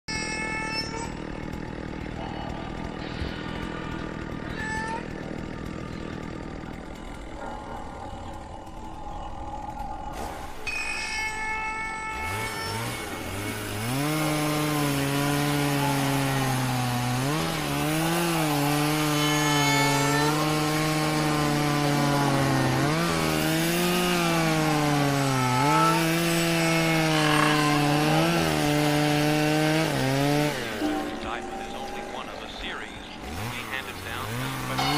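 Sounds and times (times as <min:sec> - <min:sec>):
chainsaw engine revving: 0:00.1 - 0:10.8, 0:12.0 - 0:34.9.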